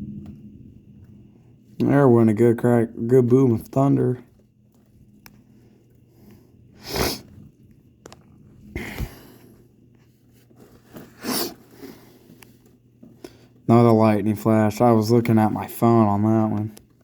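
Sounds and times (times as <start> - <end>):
person breathing close to microphone: 6.1 - 7.4, 8.7 - 9.7.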